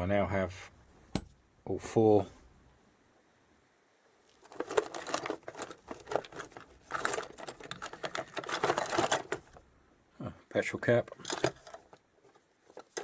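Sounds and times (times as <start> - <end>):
metal parts clattering in box: 4.4 - 9.6, 11.0 - 13.0.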